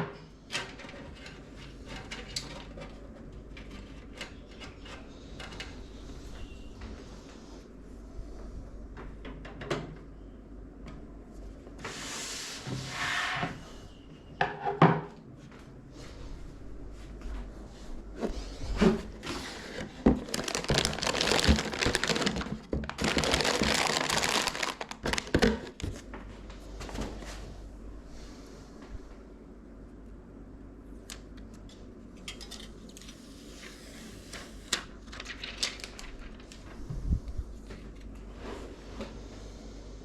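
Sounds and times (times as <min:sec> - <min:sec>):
rustling and scraping: 0:15.6 - 0:27.6.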